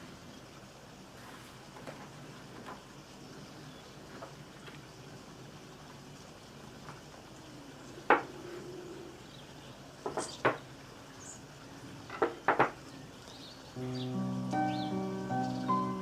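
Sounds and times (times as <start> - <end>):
background music: 13.8 - 16.0.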